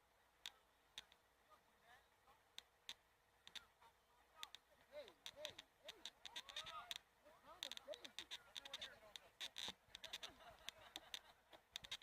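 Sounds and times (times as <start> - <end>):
sharp clicks: 2.6 - 3.7, 4.4 - 7.0, 7.6 - 12.0.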